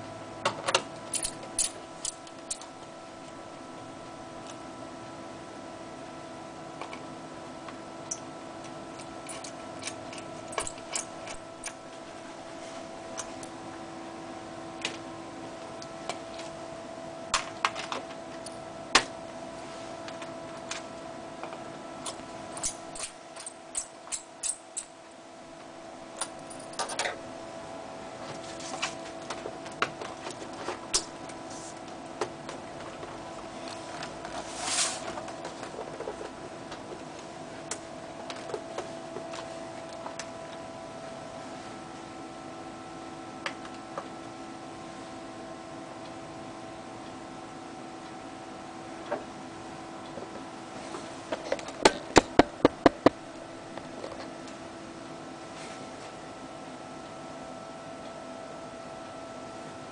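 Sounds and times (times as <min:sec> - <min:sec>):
steady hum: 0:00.0 - 0:59.9
short scrape: 0:34.4 - 0:35.0.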